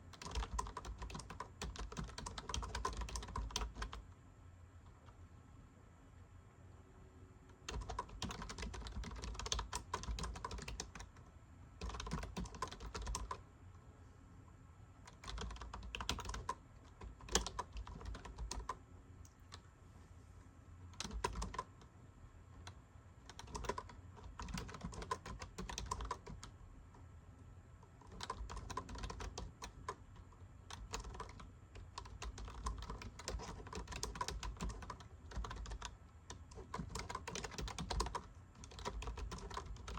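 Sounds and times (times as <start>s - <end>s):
typing on keyboard: 0.1s - 4.0s, 7.6s - 11.2s, 11.8s - 13.4s, 15.1s - 18.8s, 21.0s - 21.7s, 22.6s - 26.5s, 28.0s - 39.9s.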